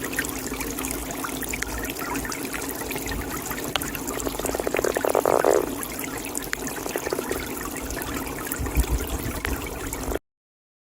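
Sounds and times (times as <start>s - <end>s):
trickling water: 0.0s - 10.2s
toad trilling: 3.8s - 5.8s, 6.8s - 7.4s.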